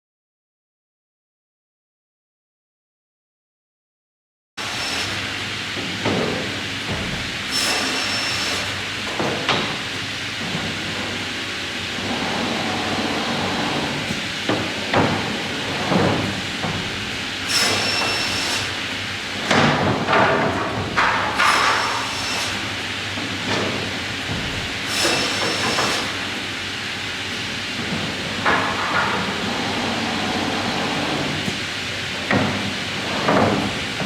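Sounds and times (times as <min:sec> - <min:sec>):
saw machine running: 0:11.1 - 0:19.2, 0:21.4 - 0:34.0
saw blade cutting timber: 0:17.4 - 0:18.8, 0:21.4 - 0:22.7, 0:24.8 - 0:26.2.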